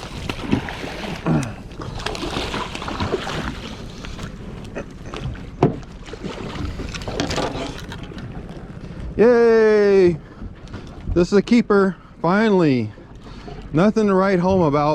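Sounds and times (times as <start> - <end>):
water splashing: 0.0 - 8.6
boat noise: 0.0 - 14.9
steady wind: 0.0 - 14.9
sharp knocks on boat: 5.6 - 5.9.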